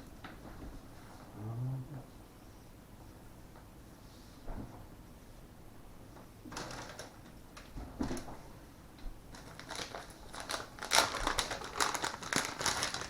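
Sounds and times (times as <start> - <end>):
crinkly rustles: 9.3 - 13.0.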